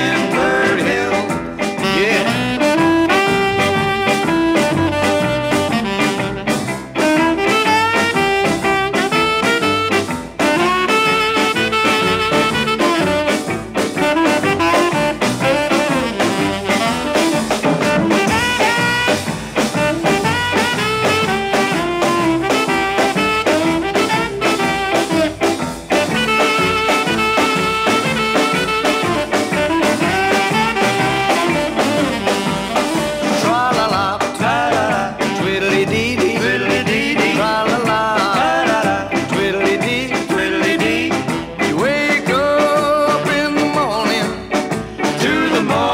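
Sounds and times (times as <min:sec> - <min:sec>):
swing jazz with brass: 0:00.0 - 0:45.9.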